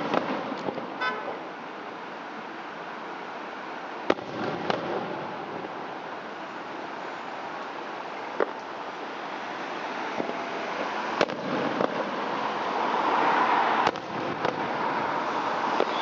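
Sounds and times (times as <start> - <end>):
sharp firework bangs: 0.0 - 1.4, 4.1 - 5.8, 11.1 - 12.2, 13.8 - 14.8, 15.7 - 16.0
fireworks bursting: 0.0 - 1.5, 4.0 - 6.8, 8.3 - 16.0.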